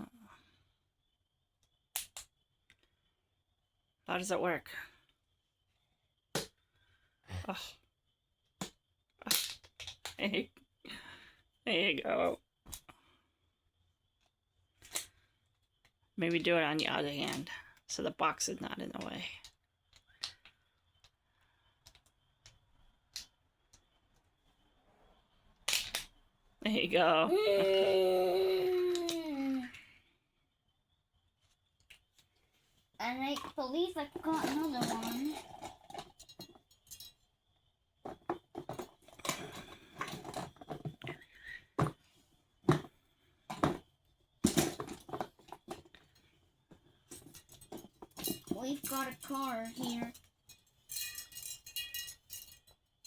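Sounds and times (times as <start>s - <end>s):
toys clattering in a box: 33.3s - 37.2s, 38.1s - 42.0s, 42.7s - 46.0s, 47.1s - 52.8s.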